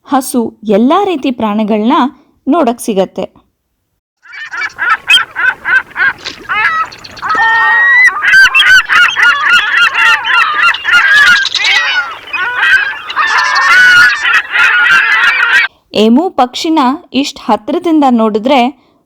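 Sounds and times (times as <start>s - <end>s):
flock of birds calling: 4.2s - 15.7s.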